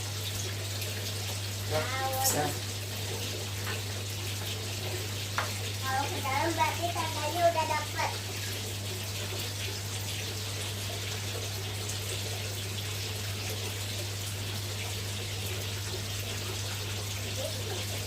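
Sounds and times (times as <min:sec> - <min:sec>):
water rushing into a pond: 0:00.0 - 0:03.5.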